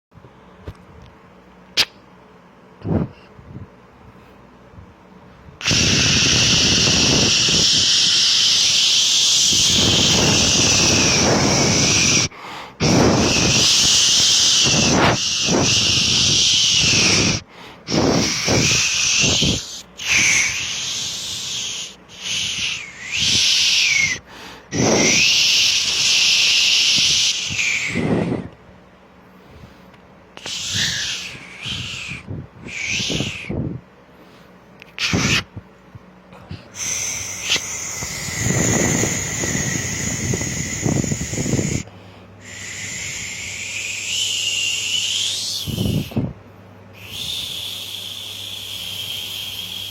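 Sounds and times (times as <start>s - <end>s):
loud hiss of blowing air: 5.6s - 28.5s, 30.4s - 33.6s, 36.7s - 46.3s, 47.0s - 49.9s.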